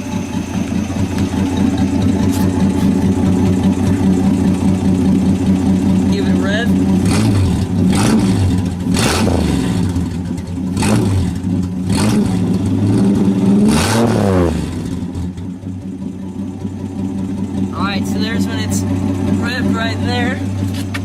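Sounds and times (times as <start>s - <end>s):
engine without muffler revving: 0.0s - 21.0s.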